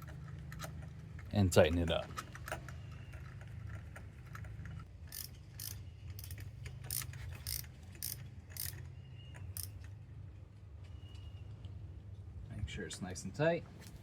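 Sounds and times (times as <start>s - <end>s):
ratchet wrench clicking: 5.1s - 8.8s, 9.5s - 9.8s.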